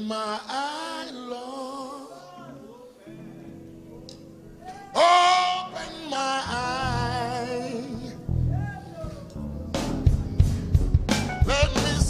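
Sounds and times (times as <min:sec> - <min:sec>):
held instrumental chords: 0:03.2 - 0:12.0
solo voice singing with vibrato: 0:04.9 - 0:08.2, 0:11.5 - 0:12.0
bass notes: 0:06.5 - 0:12.0.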